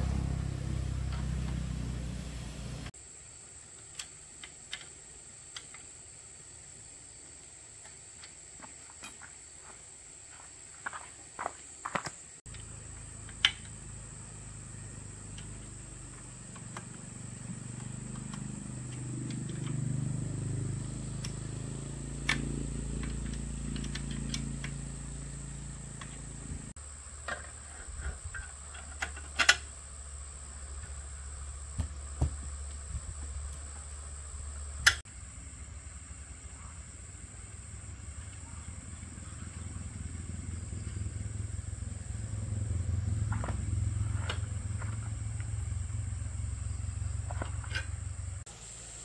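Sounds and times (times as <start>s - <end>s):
low hum: 0.0s - 2.9s, 12.5s - 26.8s
insects chirping: 0.0s - 49.0s.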